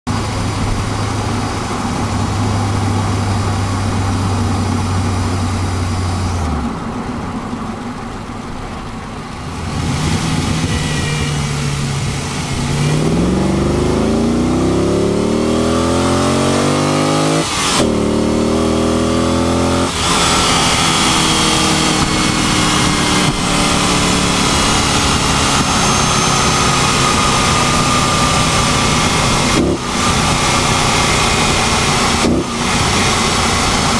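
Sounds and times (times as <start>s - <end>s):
car engine accelerating: 0.1s - 33.9s
steady low drone in car: 0.1s - 33.9s.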